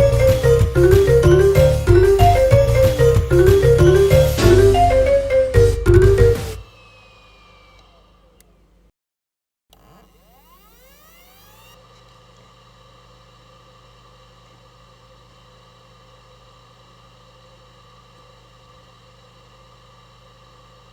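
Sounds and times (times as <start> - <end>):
small motor whirring: 6.6 - 8.9, 9.7 - 13.4.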